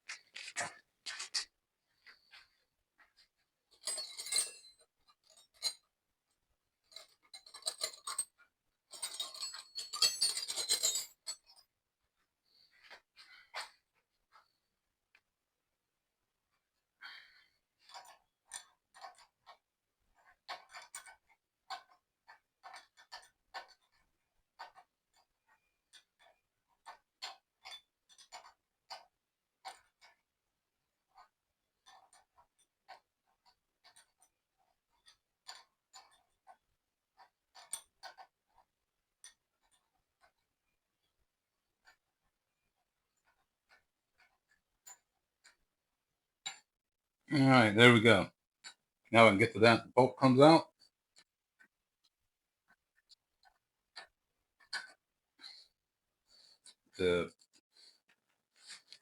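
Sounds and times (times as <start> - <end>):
metal tools clinking and rattling: 3.7 - 5.9, 6.9 - 11.6.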